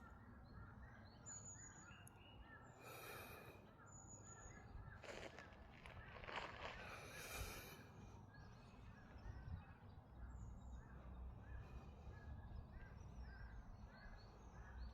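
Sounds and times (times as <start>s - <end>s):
wind rumble on microphone: 8.9s - 9.9s.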